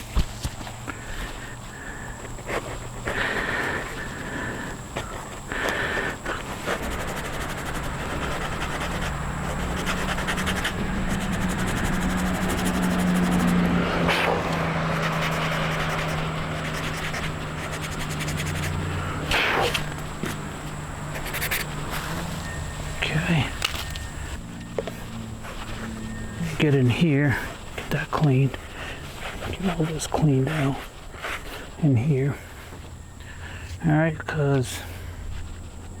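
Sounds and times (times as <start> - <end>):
rotary tool grinding filler: 2.2 - 27.8.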